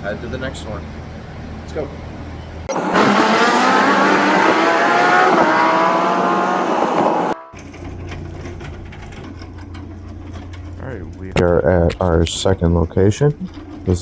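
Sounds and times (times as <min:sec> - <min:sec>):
race car engine revving: 0:02.7 - 0:07.5.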